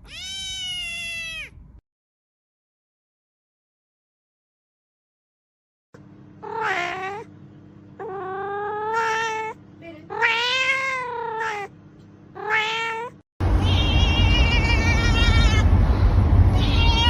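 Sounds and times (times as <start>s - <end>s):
cat meowing: 0.0s - 1.6s, 6.4s - 7.3s, 8.0s - 11.7s, 12.4s - 15.7s, 16.6s - 17.0s.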